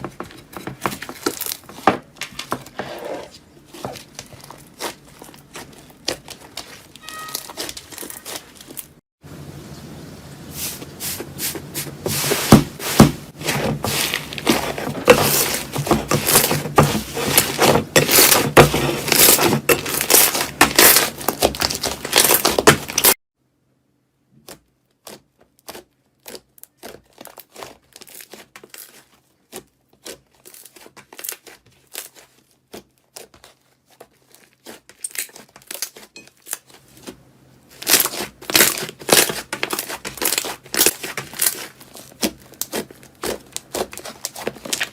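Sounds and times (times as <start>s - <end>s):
slime crackling and popping: 37.7s - 44.9s.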